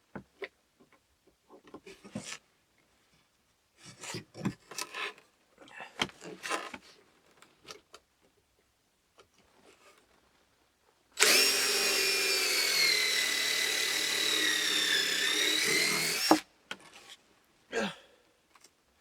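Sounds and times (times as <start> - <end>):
drill bit whining into wood: 11.2 - 16.4.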